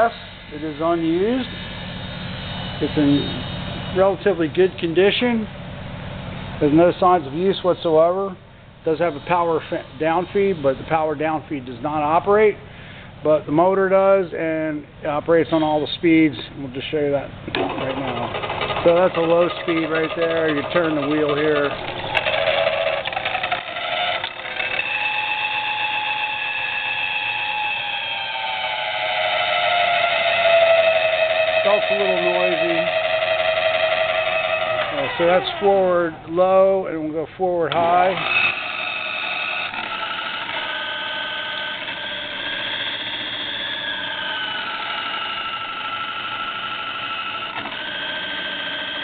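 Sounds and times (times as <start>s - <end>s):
noisy drive belt: 0.0s - 14.4s, 15.0s - 49.0s
drill press motor whining: 17.4s - 36.7s, 37.7s - 49.0s.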